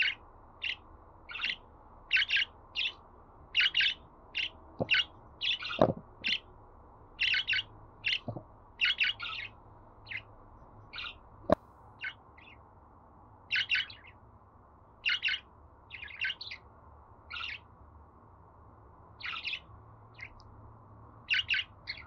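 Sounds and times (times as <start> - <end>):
budgerigars chirping: 0.0 - 6.5, 7.2 - 10.3, 10.9 - 11.2, 12.0 - 12.6, 13.5 - 14.2, 15.0 - 16.6, 17.3 - 17.7, 19.2 - 20.4, 21.3 - 22.0.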